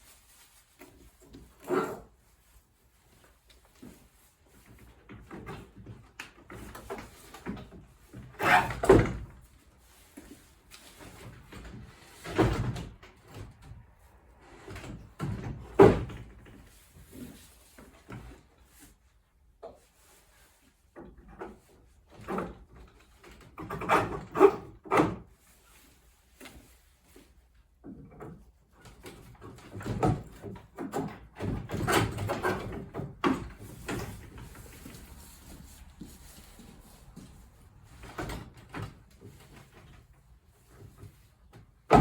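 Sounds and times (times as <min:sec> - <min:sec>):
wood scraping on wood: 0:31.0 - 0:39.6.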